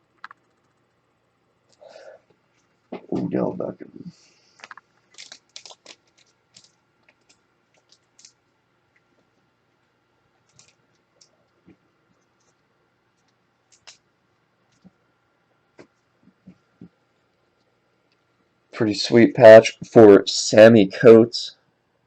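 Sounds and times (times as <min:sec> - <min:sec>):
cards and packaging being handled: 0:04.6 - 0:08.4, 0:10.4 - 0:11.3.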